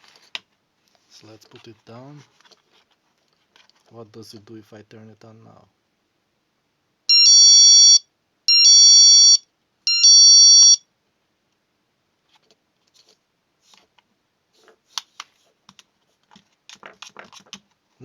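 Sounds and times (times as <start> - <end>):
electronic door alarm chime: 7.1 - 10.8.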